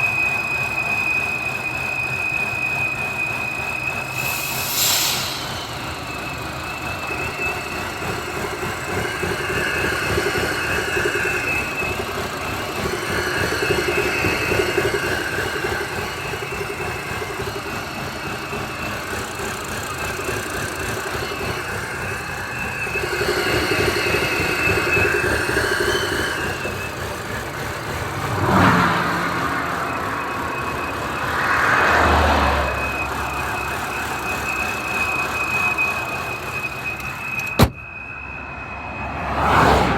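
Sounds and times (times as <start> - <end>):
car engine with high-pitched whistle: 0.0 - 39.9.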